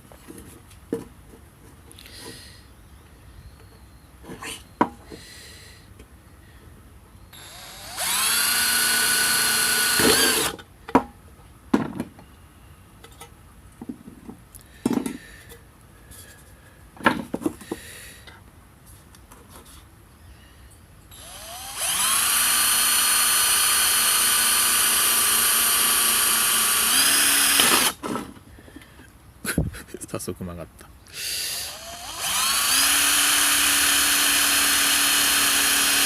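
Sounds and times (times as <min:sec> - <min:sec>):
electric power drill whining: 0:07.4 - 0:10.6, 0:21.1 - 0:28.0, 0:31.4 - 0:36.0.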